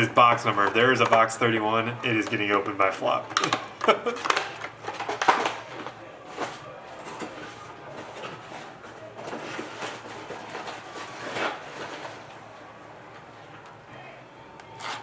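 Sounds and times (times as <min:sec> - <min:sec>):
hands rustling card box packaging: 0:00.0 - 0:12.3.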